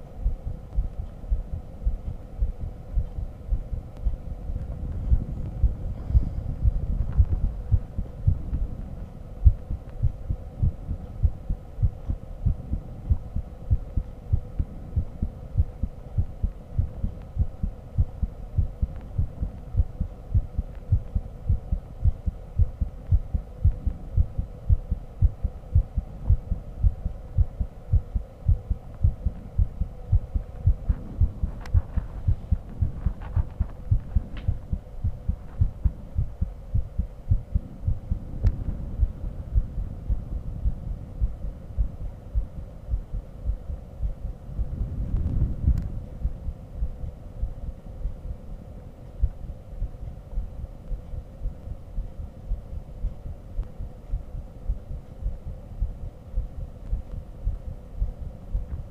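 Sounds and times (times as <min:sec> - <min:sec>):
faint steady hum: 0:00.0 - 0:58.9
heartbeat thuds: 0:00.2 - 0:48.4, 0:49.2 - 0:58.9
microphone rustling: 0:30.8 - 0:36.0.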